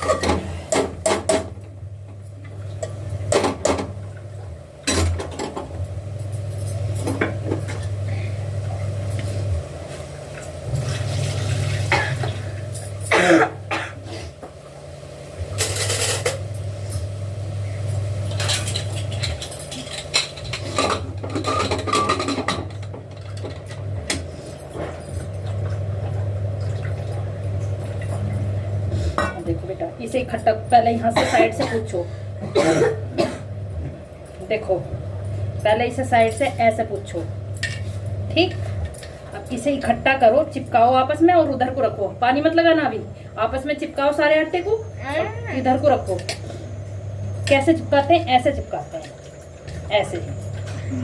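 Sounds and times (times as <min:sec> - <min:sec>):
low steady hum: 0:00.0 - 0:51.0.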